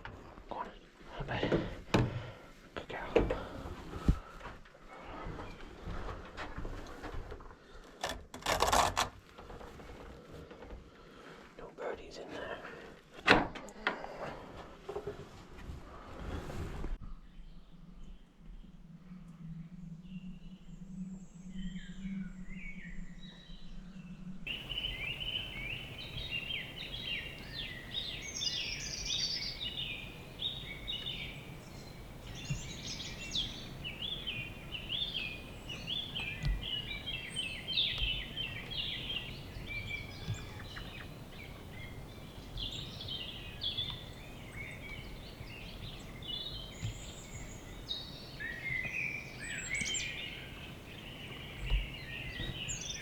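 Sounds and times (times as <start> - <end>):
faint background noise: 0.0 - 22.6, 23.6 - 53.0
birds chirping and trilling: 2.2 - 3.6, 20.0 - 53.0.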